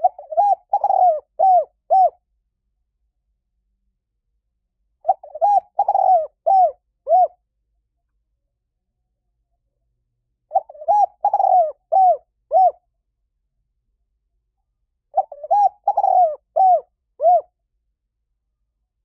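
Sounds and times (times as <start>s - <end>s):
dove cooing: 0.0s - 2.2s, 5.0s - 7.4s, 10.5s - 12.8s, 15.1s - 17.6s.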